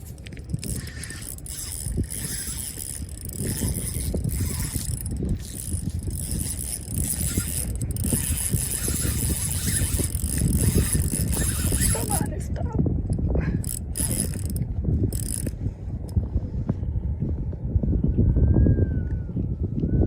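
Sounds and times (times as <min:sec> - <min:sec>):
fishing reel drag clicking: 0:00.0 - 0:12.3, 0:13.6 - 0:15.6.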